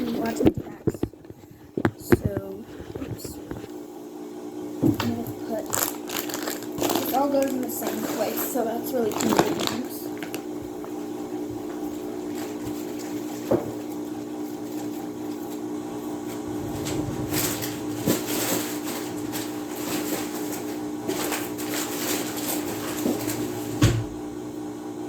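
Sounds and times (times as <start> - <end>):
electric mixer running: 15.0 - 21.6
rustling and clattering: 16.2 - 24.0.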